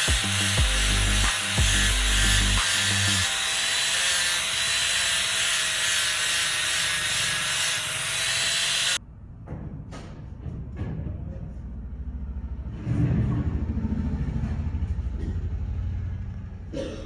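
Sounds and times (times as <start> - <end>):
power tool hissing: 0.0 - 9.0.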